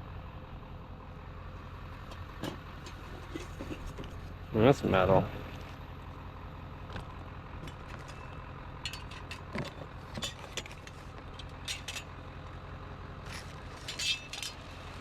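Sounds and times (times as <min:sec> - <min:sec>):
vehicle engine idling: 0:00.0 - 0:15.0
metal object clinking: 0:07.7 - 0:09.5, 0:10.2 - 0:12.2, 0:13.9 - 0:14.6.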